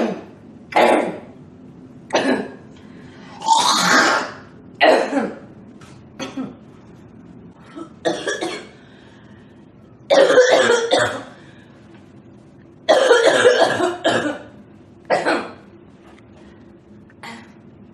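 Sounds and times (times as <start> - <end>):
girl coughing: 2.2 - 2.6, 3.6 - 5.4, 6.2 - 6.6, 8.0 - 8.8, 10.1 - 11.4, 12.9 - 14.5, 15.1 - 15.6.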